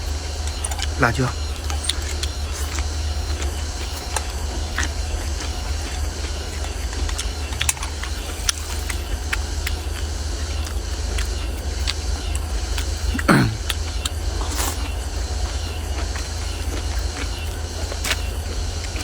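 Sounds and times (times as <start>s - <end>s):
chewing: 0.0s - 19.0s.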